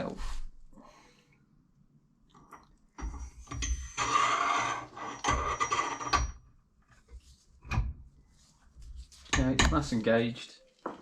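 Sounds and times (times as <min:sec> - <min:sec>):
metal scraping and rattling: 0:03.0 - 0:06.4.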